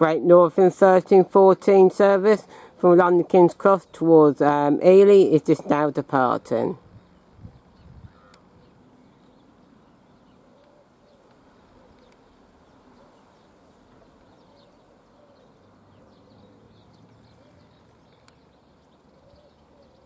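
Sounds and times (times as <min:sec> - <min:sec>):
small birds chirping: 0:00.0 - 0:20.0
pigeons cooing: 0:10.3 - 0:17.9, 0:19.0 - 0:20.0.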